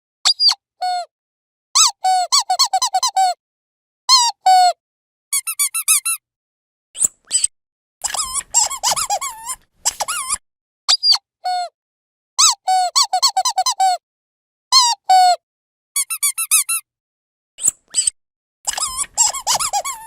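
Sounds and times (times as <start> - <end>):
dog toy squeaking: 5.4 - 6.2, 7.3 - 10.4, 12.4 - 14.0, 16.0 - 16.8, 17.6 - 18.1, 18.7 - 20.0.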